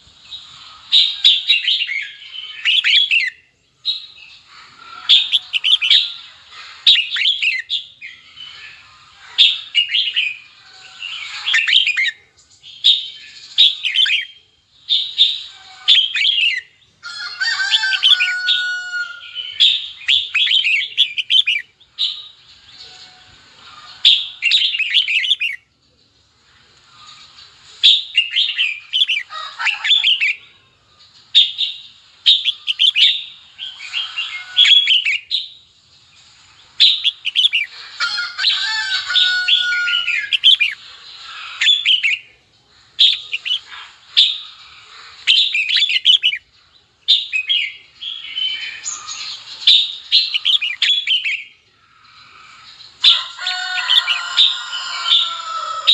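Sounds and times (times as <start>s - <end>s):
bird chirping phrases: 0.3s - 25.8s, 27.8s - 35.7s, 36.6s - 55.9s
bird call with held notes: 4.6s - 6.2s, 15.6s - 22.2s, 22.8s - 25.6s, 28.1s - 30.5s, 32.3s - 35.3s, 36.8s - 40.8s, 43.0s - 44.4s, 45.3s - 46.5s, 47.1s - 51.5s.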